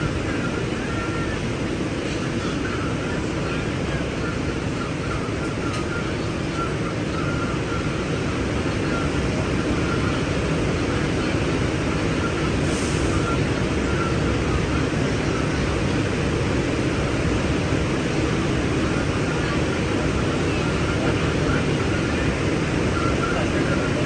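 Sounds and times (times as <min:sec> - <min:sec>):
subway train rumbling: 0:00.0 - 0:24.0.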